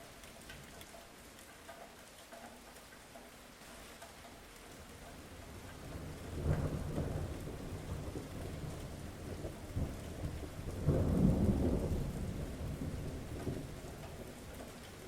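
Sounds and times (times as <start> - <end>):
steady rain falling: 0.0 - 15.0
low thunder rumbling: 5.9 - 14.3.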